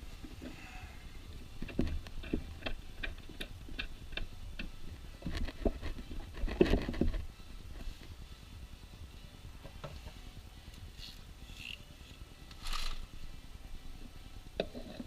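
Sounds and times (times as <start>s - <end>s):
ratchet wrench clicking: 11.0s - 13.0s.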